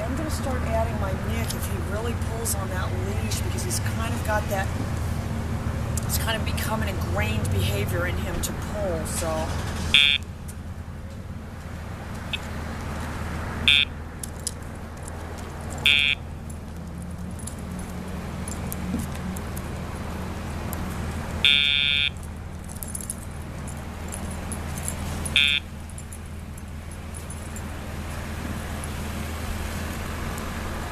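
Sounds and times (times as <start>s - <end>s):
short electronic beeps: 10.0s - 10.2s, 13.7s - 13.9s, 15.9s - 16.2s, 21.5s - 22.2s, 25.3s - 25.7s.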